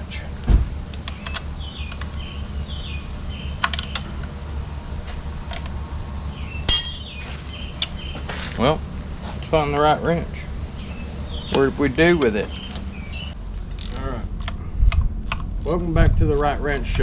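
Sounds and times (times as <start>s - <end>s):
steady low hum: 5.8s - 7.3s
metal hand tools clinking: 6.7s - 7.2s
sharp ringing metal clink: 6.7s - 7.3s.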